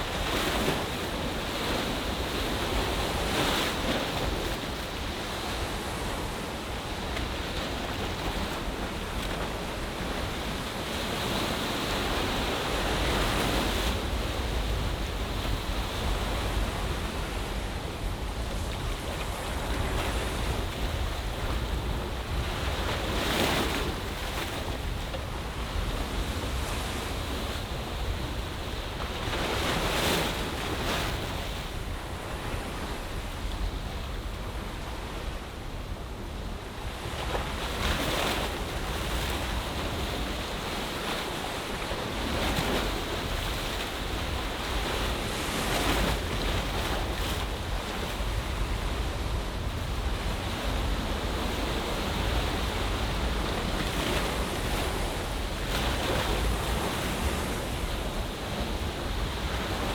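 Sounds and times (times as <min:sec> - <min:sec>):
wind rumble on microphone: 0:00.0 - 0:59.9
ocean waves breaking: 0:36.1 - 0:59.9.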